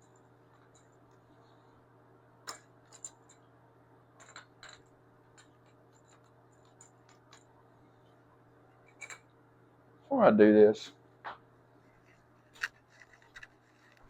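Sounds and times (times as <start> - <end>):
faint steady hum: 0.0 - 14.0
small parts clicking and tapping: 2.4 - 3.5, 4.2 - 7.5, 12.0 - 14.0.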